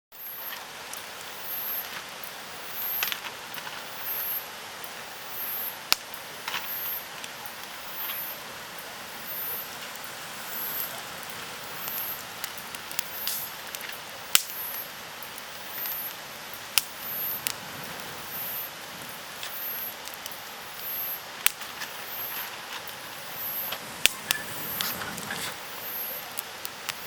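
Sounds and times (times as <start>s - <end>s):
campfire crackling and popping: 0.2s - 27.0s
faint high chirp: 24.2s - 25.2s.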